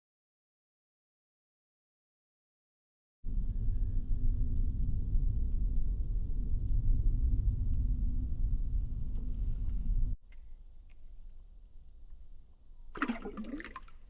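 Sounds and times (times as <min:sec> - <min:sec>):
wind buffeting microphone: 0:03.3 - 0:10.2.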